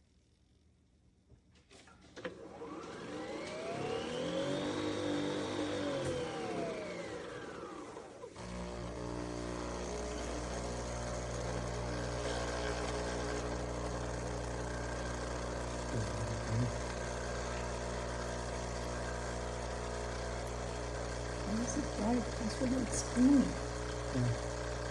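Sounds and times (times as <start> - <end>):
coffee machine motor whine: 2.2 - 24.9
steady mechanical hum: 14.5 - 19.6.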